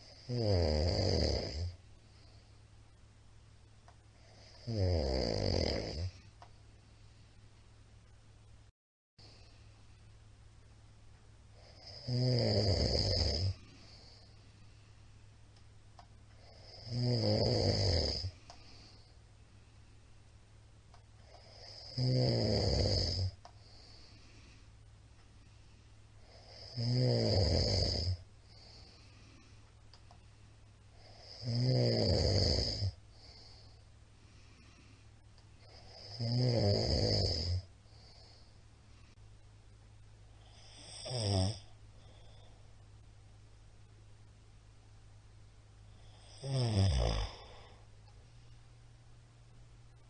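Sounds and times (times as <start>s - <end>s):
man snoring loudly: 0.0s - 1.8s, 4.2s - 6.2s, 11.6s - 14.2s, 16.4s - 18.4s, 21.4s - 23.4s, 26.2s - 28.2s, 31.0s - 33.5s, 35.7s - 37.7s, 40.4s - 41.7s, 46.1s - 47.8s.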